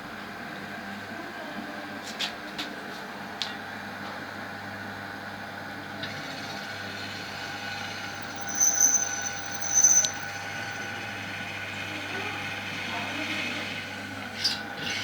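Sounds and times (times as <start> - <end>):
electric drill whine: 6.0 - 11.5.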